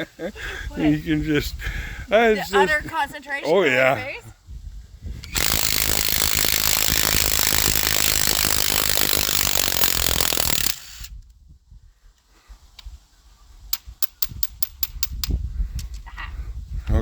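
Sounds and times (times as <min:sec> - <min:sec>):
power tool running loudly: 0:05.3 - 0:11.1.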